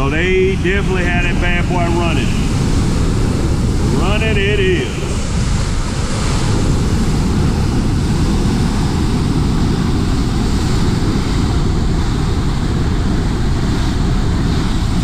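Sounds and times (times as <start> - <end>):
water rushing through spillway: 0.0 - 15.0
wind buffeting microphone: 0.0 - 15.0.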